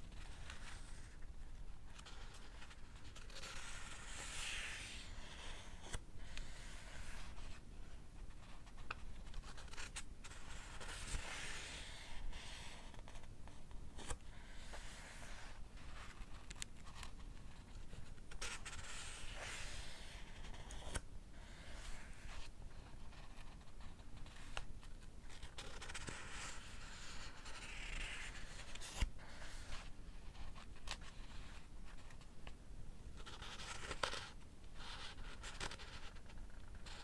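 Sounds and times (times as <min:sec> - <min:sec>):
book pages turning: 0:01.9 - 0:07.6, 0:08.4 - 0:13.3, 0:14.0 - 0:22.5, 0:23.2 - 0:32.3.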